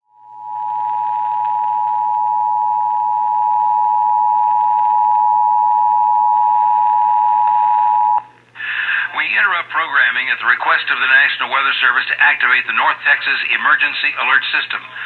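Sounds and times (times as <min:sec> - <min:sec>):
faint hiss: 0:08.2 - 0:15.0.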